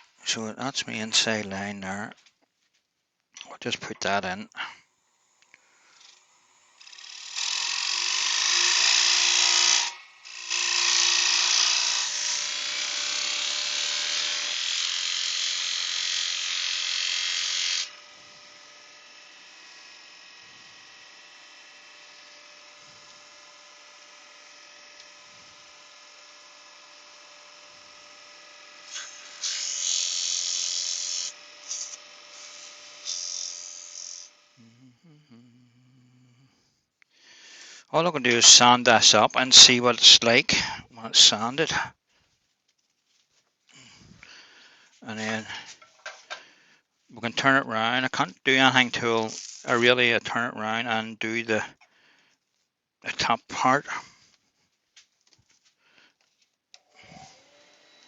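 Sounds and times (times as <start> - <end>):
lathe tool cutting wood: 5.2 - 34.6, 38.0 - 41.8, 45.0 - 45.7, 47.3 - 50.1, 57.0 - 58.0
lathe motor hum and whine: 8.0 - 34.6, 57.2 - 58.0.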